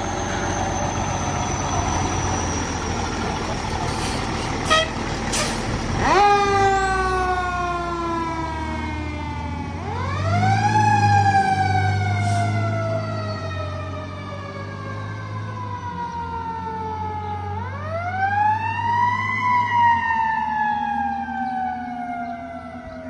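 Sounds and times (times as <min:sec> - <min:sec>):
fire engine siren wailing: 0:00.0 - 0:23.0
truck engine running low: 0:00.0 - 0:23.0.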